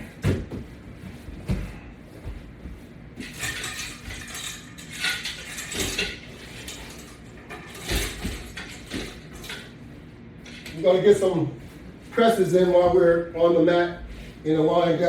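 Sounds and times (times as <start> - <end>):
metal chains rattling and clinking: 3.2 - 9.7.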